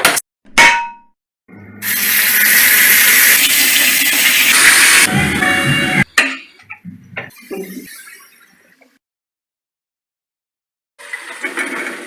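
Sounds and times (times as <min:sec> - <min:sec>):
loud sizzling in hot pan: 0:01.8 - 0:05.1.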